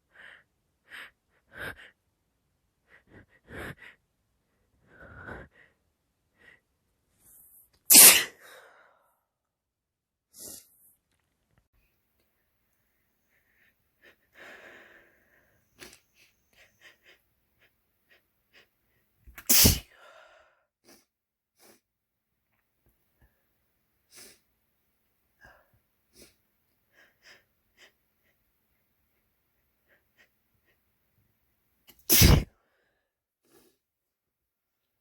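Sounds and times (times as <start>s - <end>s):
sniffs: 7.2s - 8.6s, 10.3s - 11.0s, 13.4s - 18.7s, 19.4s - 20.0s, 20.8s - 21.9s, 24.1s - 24.5s, 25.5s - 28.4s, 31.9s - 33.8s
loud wet sneeze: 7.9s - 8.4s, 19.4s - 19.9s, 31.9s - 32.5s.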